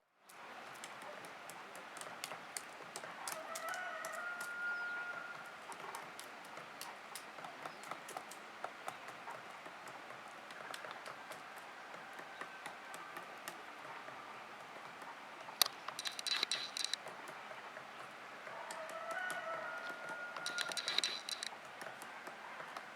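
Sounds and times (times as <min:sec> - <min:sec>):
woodpecker pecking at wood: 0:00.8 - 0:22.9.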